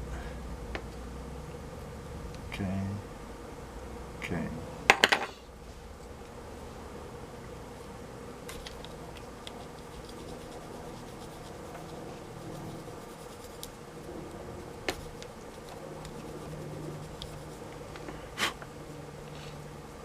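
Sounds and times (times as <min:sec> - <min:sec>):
faint steady hum: 0:00.0 - 0:20.0
scratching and rubbing on plastic: 0:08.5 - 0:20.0.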